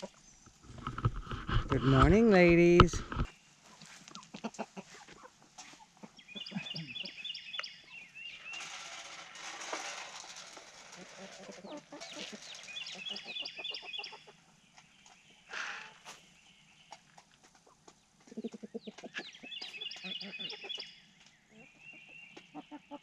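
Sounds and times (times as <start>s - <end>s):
hens clucking: 0.0s - 23.0s
knocks and rustling: 0.6s - 3.3s, 8.5s - 13.3s.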